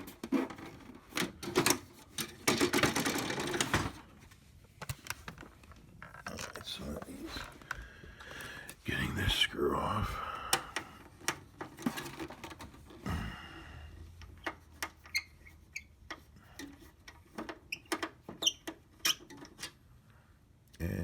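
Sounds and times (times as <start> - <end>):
screw squeaking: 14.4 - 19.8.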